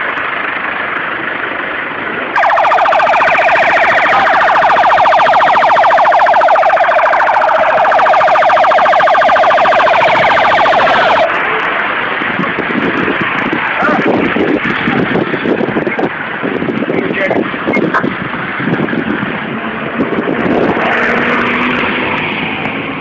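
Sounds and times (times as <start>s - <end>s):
traffic: 0.0s - 23.0s
emergency vehicle siren: 2.3s - 16.8s.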